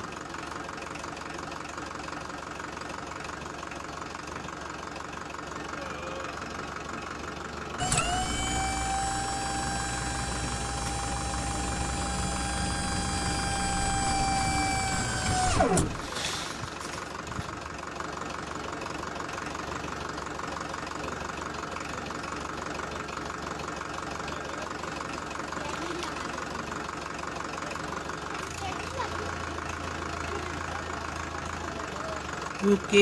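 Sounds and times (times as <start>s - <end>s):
small electric motor whining: 7.8s - 16.3s.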